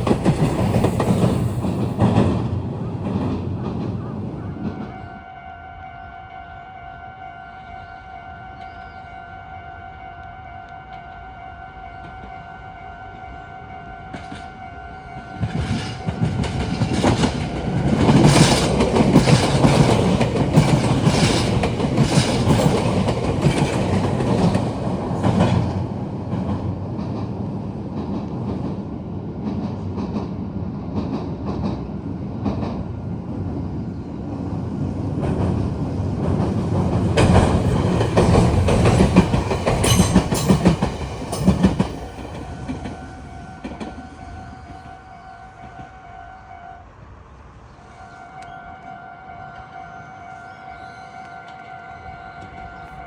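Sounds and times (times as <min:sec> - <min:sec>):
train wheels clattering over rails: 0:00.0 - 0:04.8, 0:15.4 - 0:33.0, 0:34.4 - 0:44.1
electric train rumbling past: 0:00.0 - 0:53.0.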